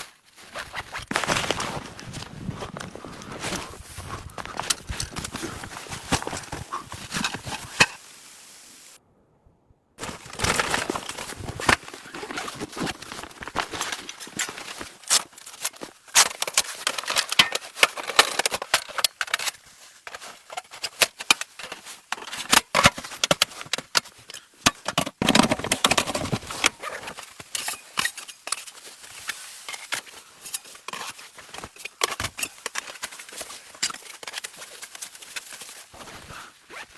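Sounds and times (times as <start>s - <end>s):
crunching and rustling handling: 0.0s - 8.3s, 10.0s - 23.9s.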